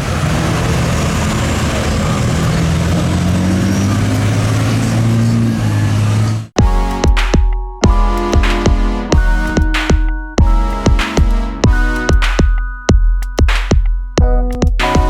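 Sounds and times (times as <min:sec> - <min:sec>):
vehicle engine running: 0:00.0 - 0:06.6.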